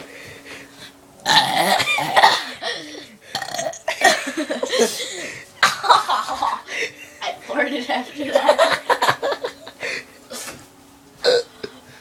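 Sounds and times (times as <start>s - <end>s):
person burping loudly: 1.2s - 4.3s, 11.2s - 11.8s.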